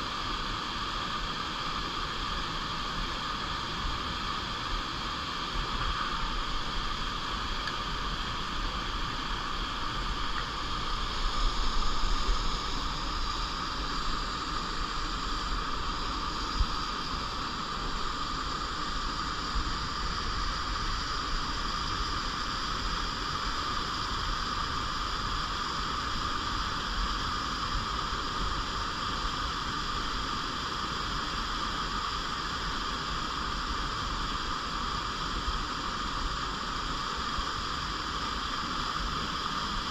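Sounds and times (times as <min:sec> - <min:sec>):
stream water flowing: 0:00.2 - 0:29.2.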